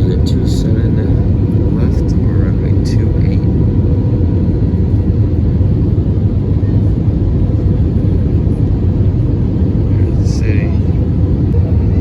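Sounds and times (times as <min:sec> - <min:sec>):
airplane engines droning in cabin: 0:00.0 - 0:12.0.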